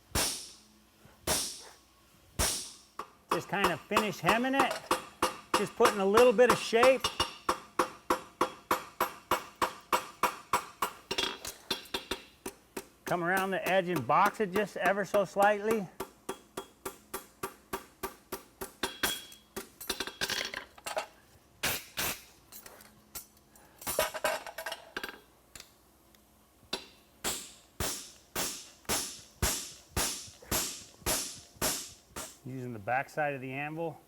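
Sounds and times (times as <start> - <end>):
hammer striking horseshoe on anvil: 2.4 - 20.3, 26.7 - 32.4.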